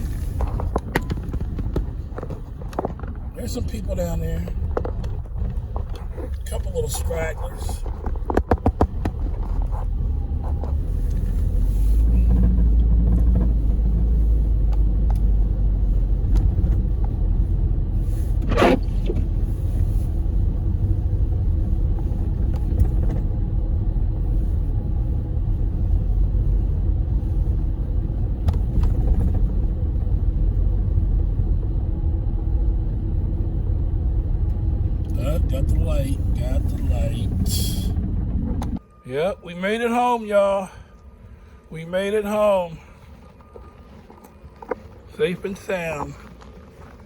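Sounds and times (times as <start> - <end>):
car engine rumble from inside: 0.0 - 47.0
tyres on snowy road: 0.0 - 47.0.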